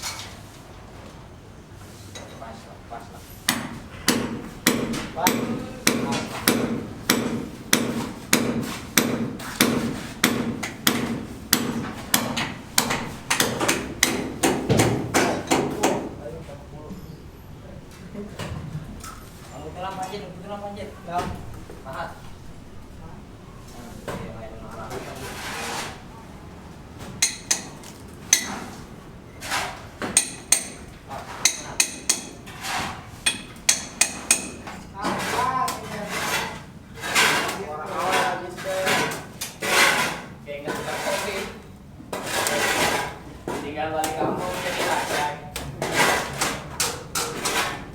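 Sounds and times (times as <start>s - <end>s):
hammer striking steel chisel: 3.5s - 16.1s, 27.2s - 28.8s, 30.0s - 34.7s.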